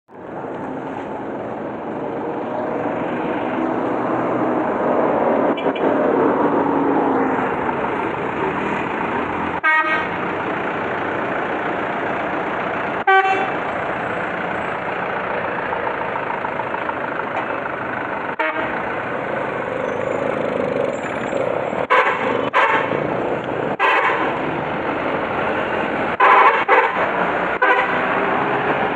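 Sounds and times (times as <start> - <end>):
traffic: 0.1 - 28.9
truck engine running: 0.1 - 28.9
multi-tone air horn toots: 9.6 - 10.2, 13.0 - 13.6, 18.4 - 18.8, 21.8 - 23.0, 23.8 - 24.4, 26.2 - 28.2.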